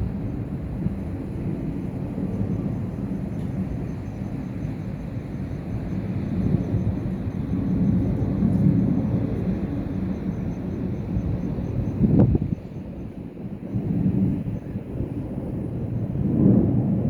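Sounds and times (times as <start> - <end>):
low outdoor rumble: 0.0 - 10.4.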